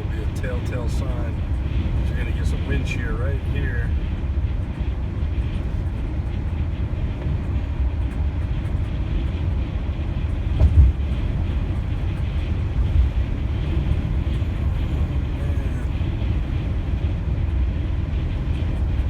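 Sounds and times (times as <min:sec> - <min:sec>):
road and wind noise: 0:00.0 - 0:19.0
low thump: 0:10.6 - 0:11.0.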